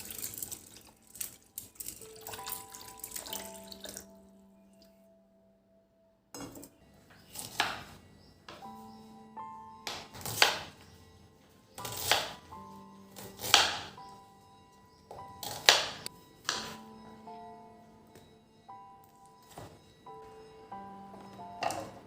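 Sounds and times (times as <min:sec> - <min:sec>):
water splashing at sink tap: 0:00.0 - 0:04.1
soft instrumental music: 0:00.0 - 0:22.0.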